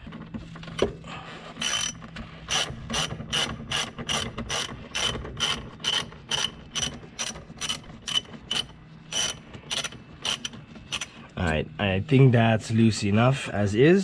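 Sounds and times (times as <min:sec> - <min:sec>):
ratchet wrench clicking: 0:01.6 - 0:11.1.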